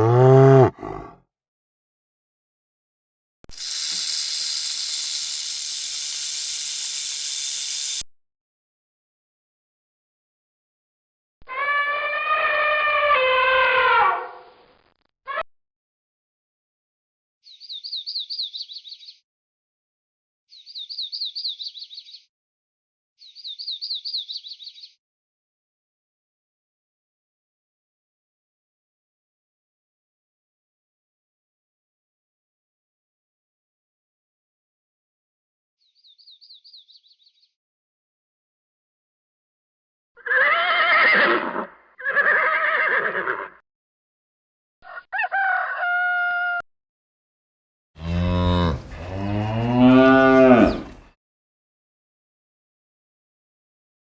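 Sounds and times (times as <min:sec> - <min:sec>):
high animal call: 0:00.0 - 0:01.1, 0:11.5 - 0:14.4, 0:48.0 - 0:51.1
horse whinnying: 0:00.0 - 0:01.1, 0:40.2 - 0:43.5, 0:48.0 - 0:51.1.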